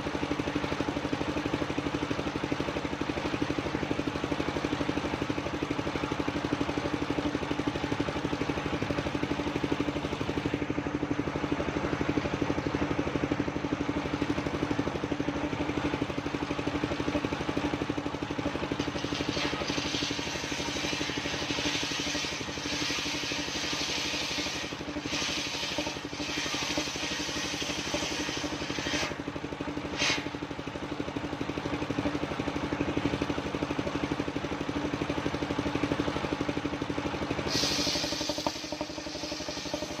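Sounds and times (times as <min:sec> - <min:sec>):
sawmill engine running: 0:00.0 - 0:40.0
saw blade cutting wood hiss: 0:18.8 - 0:29.2, 0:29.9 - 0:30.4, 0:37.4 - 0:40.0.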